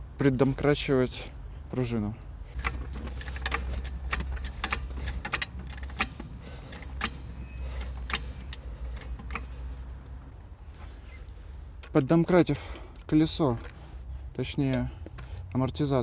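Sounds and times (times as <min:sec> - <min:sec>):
steady low rumble: 0:00.0 - 0:16.0
metallic clinks of jack and tools: 0:02.6 - 0:09.5.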